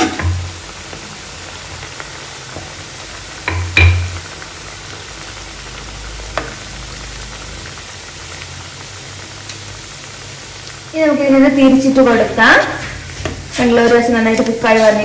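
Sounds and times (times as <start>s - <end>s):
food sizzling in hot oil: 0.0s - 15.0s
knock: 3.5s - 4.1s.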